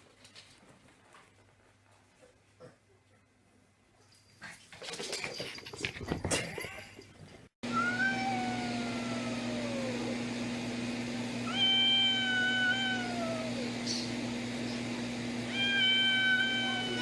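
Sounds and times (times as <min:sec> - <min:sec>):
cat meowing: 0:07.7 - 0:10.1, 0:11.4 - 0:13.7, 0:15.5 - 0:17.0.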